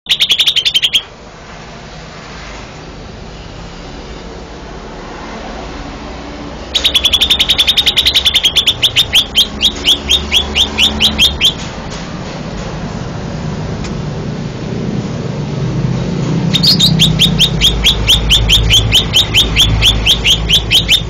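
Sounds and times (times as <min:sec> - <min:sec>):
bird singing high sweeping notes: 0:00.0 - 0:01.1, 0:06.7 - 0:11.6, 0:16.5 - 0:21.0.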